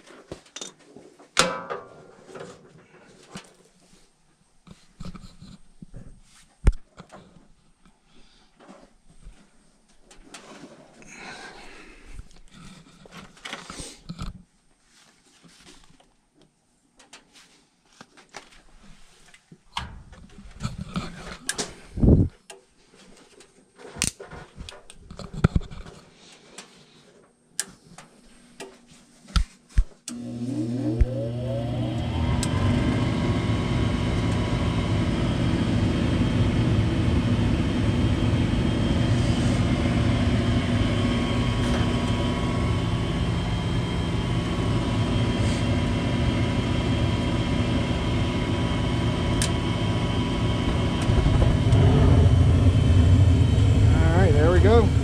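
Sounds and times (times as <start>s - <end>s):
furnace motor humming: 30.1s - 55.0s.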